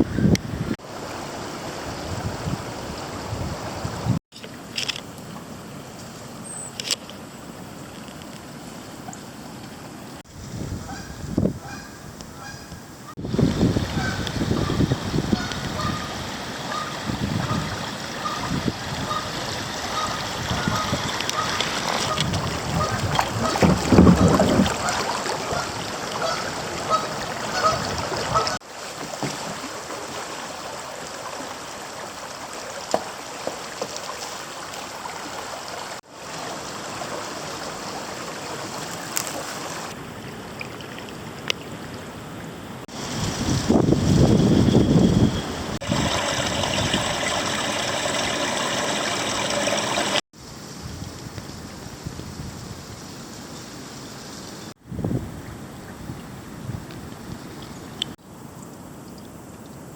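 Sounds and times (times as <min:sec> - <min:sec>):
wind on microphone: 0:00.0 - 0:00.8, 0:01.8 - 0:04.2, 0:10.2 - 0:28.6, 0:42.9 - 0:48.2, 0:50.7 - 0:53.1, 0:54.8 - 0:58.0
water splashing around kayak: 0:13.2 - 0:42.0, 0:45.6 - 0:50.2.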